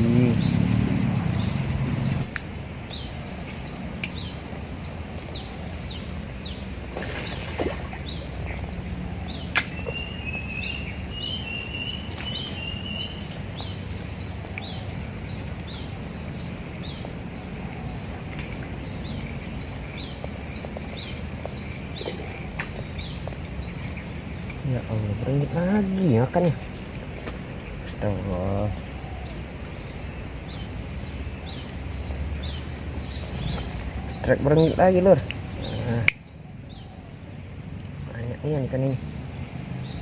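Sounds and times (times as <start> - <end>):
bird chirping: 0.0 - 40.0
sharp click: 9.5 - 10.0.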